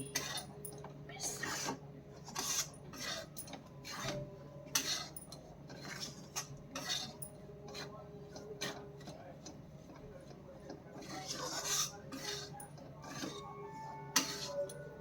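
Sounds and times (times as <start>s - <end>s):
utensil scraping a pan: 1.4s - 3.3s, 3.9s - 7.9s, 11.0s - 13.5s, 14.2s - 14.6s.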